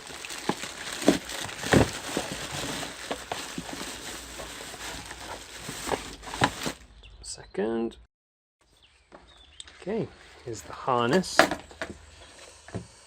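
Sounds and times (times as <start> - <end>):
packaging rustling and crinkling: 0.0 - 6.8.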